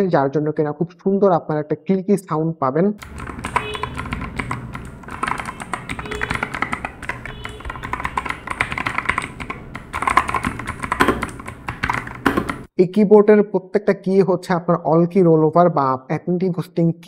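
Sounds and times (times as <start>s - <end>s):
rapid mechanical keyboard typing: 3.0s - 12.7s.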